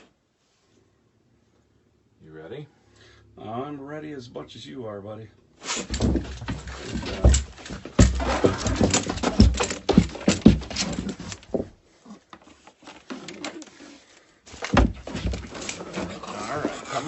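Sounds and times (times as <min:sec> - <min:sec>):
animal bumping and scuffling: 0:05.7 - 0:13.9, 0:14.5 - 0:17.0.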